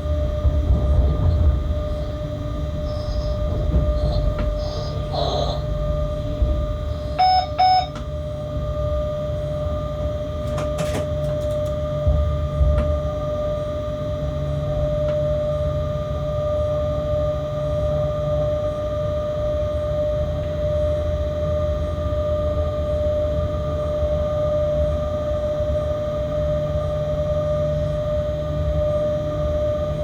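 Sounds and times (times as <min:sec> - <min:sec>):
steady whine: 0:00.0 - 0:17.4
locomotive low rumble: 0:00.0 - 0:30.0
short electronic beeps: 0:07.2 - 0:08.0.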